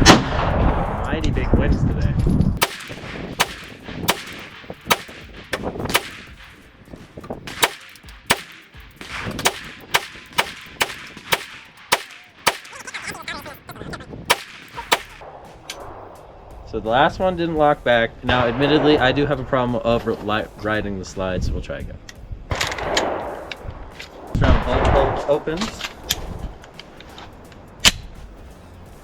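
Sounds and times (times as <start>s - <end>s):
pistol shots: 2.6s - 6.6s, 7.5s - 13.0s, 14.3s - 15.2s.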